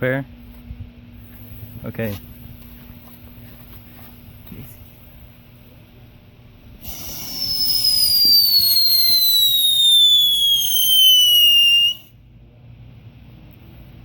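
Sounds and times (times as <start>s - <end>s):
whistle firework falling in pitch: 6.8s - 12.1s.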